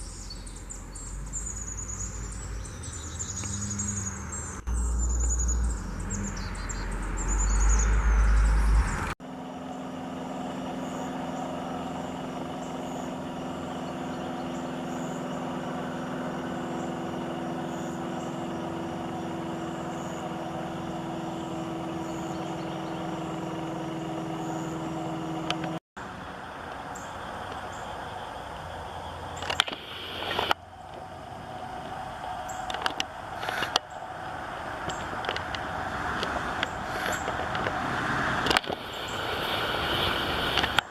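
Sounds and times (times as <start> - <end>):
high bird chirps: 0.0 - 9.9, 10.7 - 25.5
steady engine hum: 0.0 - 40.9
low uneven rumble: 26.2 - 40.9.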